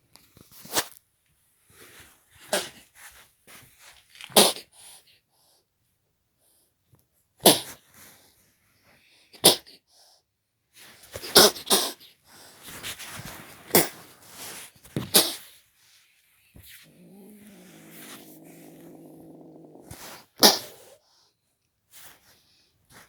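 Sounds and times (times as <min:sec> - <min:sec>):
kitten growling: 0:16.6 - 0:21.0
kitten hissing and spitting: 0:16.7 - 0:21.0.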